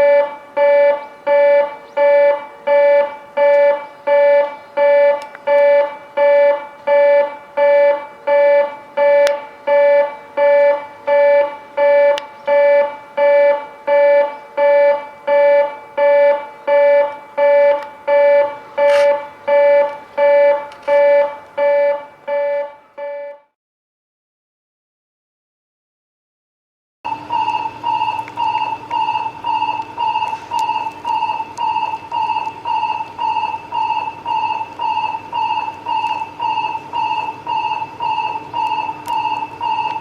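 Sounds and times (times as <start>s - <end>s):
electronic warning beeps: 0.0s - 23.5s, 27.1s - 40.0s.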